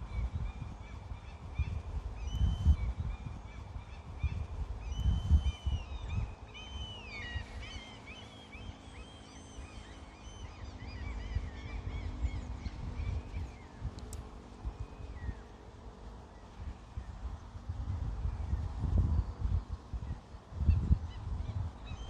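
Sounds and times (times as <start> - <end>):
birds chirping: 0.0 - 17.6
wind gusts on microphone: 0.0 - 22.0.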